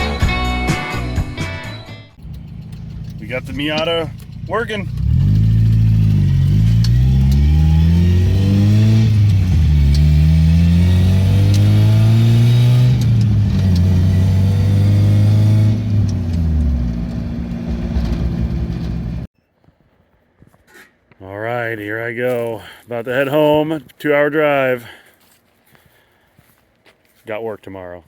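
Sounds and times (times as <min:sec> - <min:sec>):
car engine accelerating: 0:02.2 - 0:19.3.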